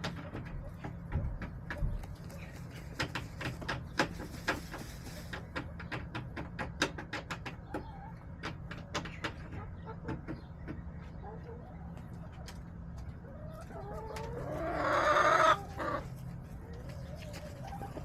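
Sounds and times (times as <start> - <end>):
hens pecking and scratching: 0.0 - 18.0.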